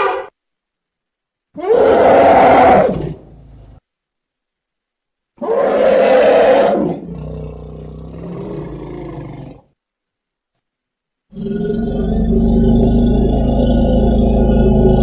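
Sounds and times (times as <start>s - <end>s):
mammoth roaring call: 0.0s - 0.3s, 1.6s - 3.5s, 5.4s - 9.7s, 11.3s - 15.0s.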